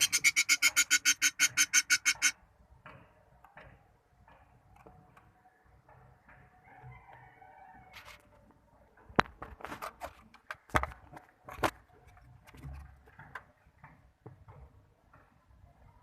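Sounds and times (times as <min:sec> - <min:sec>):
sharp clicks and knocks: 0:00.0 - 0:06.6.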